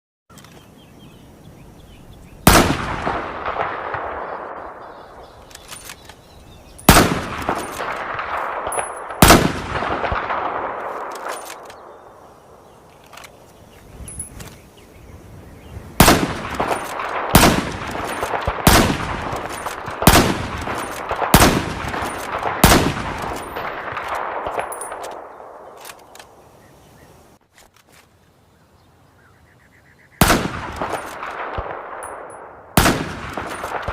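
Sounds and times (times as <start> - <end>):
small clicks of rifle bolt: 0.3 - 0.7, 5.4 - 6.3, 10.8 - 11.9, 12.9 - 14.6, 23.2 - 26.4, 27.5 - 28.1
rifle shots echoing: 2.4 - 6.2, 6.8 - 12.6, 16.0 - 26.4, 30.2 - 33.9.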